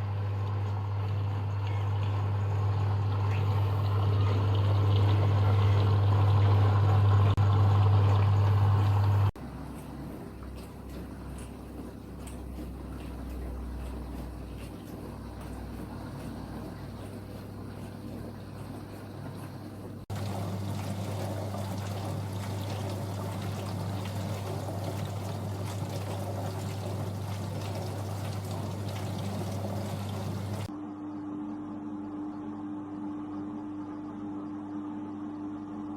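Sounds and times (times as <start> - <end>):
dishwasher pump hum: 0.0 - 30.7
water sloshing and spraying: 3.2 - 30.7.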